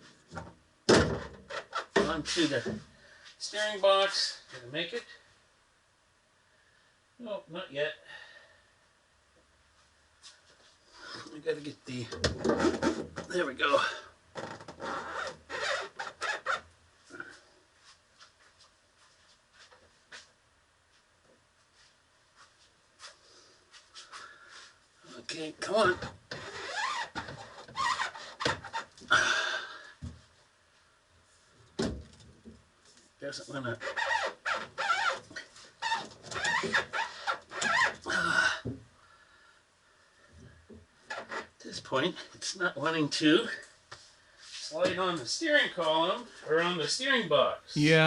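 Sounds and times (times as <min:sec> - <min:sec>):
steering column squeaking and rubbing: 0:01.4 - 0:02.0, 0:12.4 - 0:13.2, 0:14.4 - 0:16.7, 0:25.8 - 0:29.0, 0:33.8 - 0:38.1, 0:41.1 - 0:41.6.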